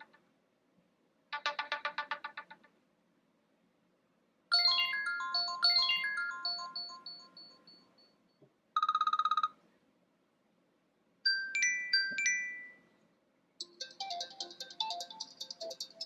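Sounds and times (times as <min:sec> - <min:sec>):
fast pulsing ringtone: 0:04.5 - 0:07.8, 0:08.8 - 0:09.5, 0:13.6 - 0:16.0
bell-like electronic melody: 0:04.5 - 0:08.1.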